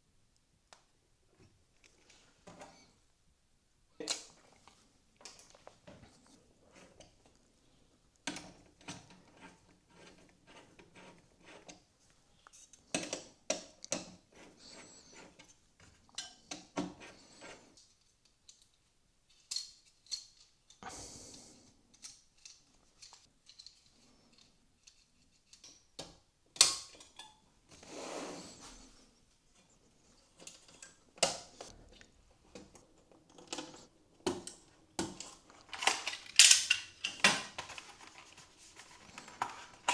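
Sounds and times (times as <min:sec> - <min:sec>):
scraping and rustling: 0:04.3 - 0:12.9, 0:35.1 - 0:39.9
small hard parts clicking: 0:33.2 - 0:38.2.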